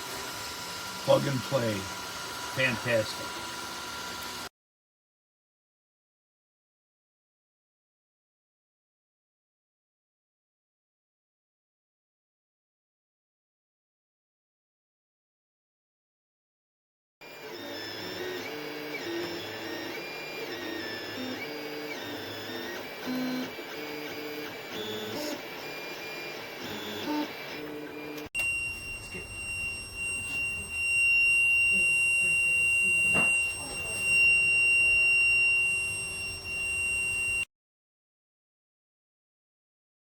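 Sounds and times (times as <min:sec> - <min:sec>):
stepper motors whining: 0:00.0 - 0:04.5, 0:17.3 - 0:37.4
steady high-pitched whine: 0:17.9 - 0:37.4.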